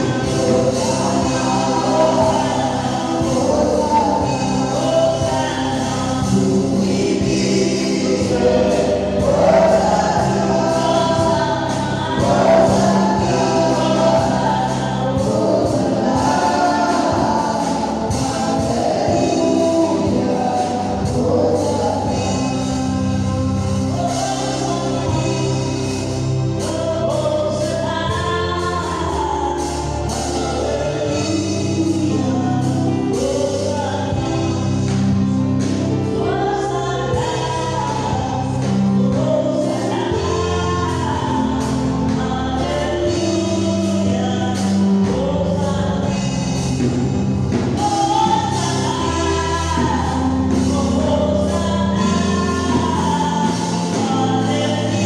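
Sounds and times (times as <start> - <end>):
bass notes: 0.0 - 55.0
group singing gospel: 0.0 - 55.0
percussion beat: 6.2 - 22.6.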